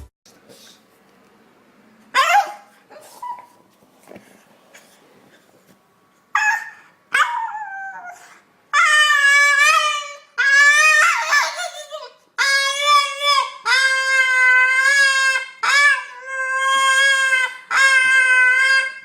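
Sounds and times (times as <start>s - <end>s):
dog yelping: 2.2s - 3.6s, 6.3s - 19.0s
dog howling and whining: 6.3s - 19.0s.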